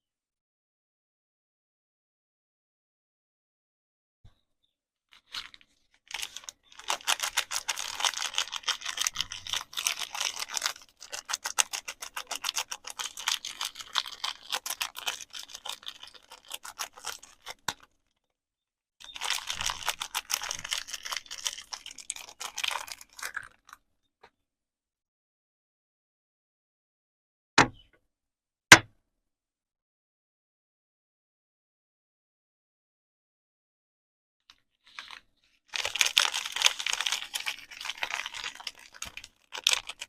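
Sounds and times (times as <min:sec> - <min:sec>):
wrapper crinkling and crackling: 0:05.1 - 0:18.2, 0:19.0 - 0:23.8, 0:34.8 - 0:40.0.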